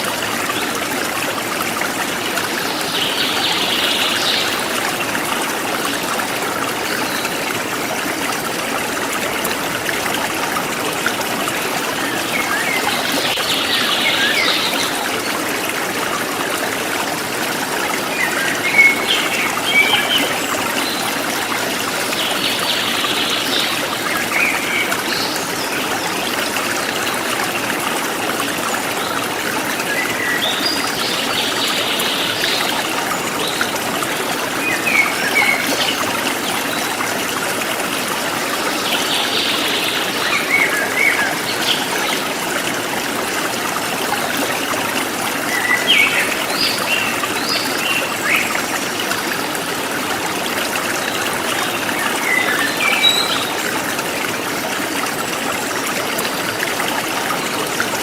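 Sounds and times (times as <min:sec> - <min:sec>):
stream trickling and splashing: 0:00.0 - 0:58.0.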